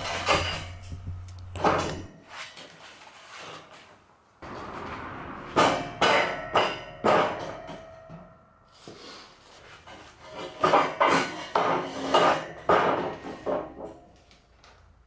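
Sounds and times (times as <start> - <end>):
metallic ring: 0.0 - 2.2, 5.6 - 8.8.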